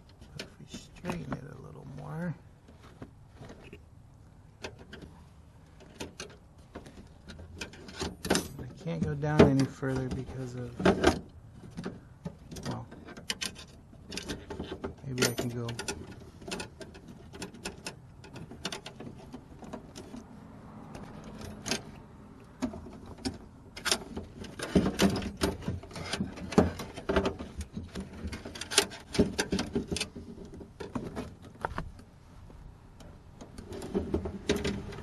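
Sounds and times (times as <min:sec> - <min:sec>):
metallic clicks and rattles in car door: 0:07.2 - 0:20.2.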